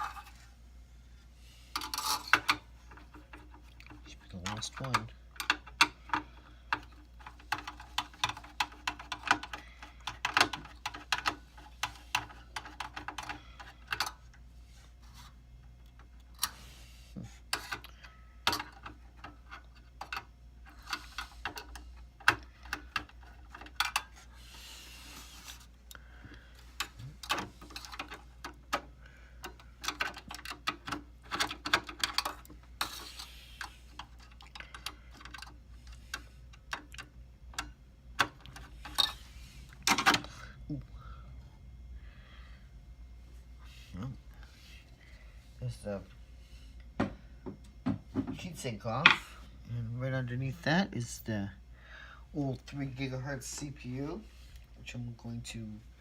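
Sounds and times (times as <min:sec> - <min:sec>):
screwdriver and metal parts clicking: 0:01.8 - 0:14.4, 0:26.8 - 0:39.2.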